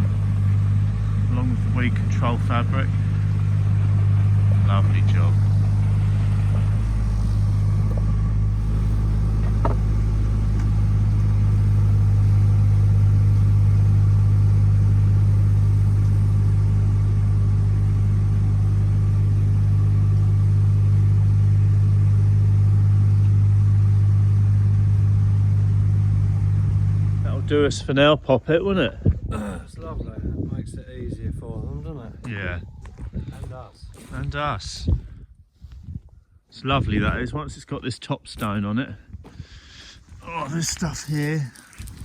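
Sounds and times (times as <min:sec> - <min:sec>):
engine humming steadily: 0:00.0 - 0:28.3, 0:39.3 - 0:42.0.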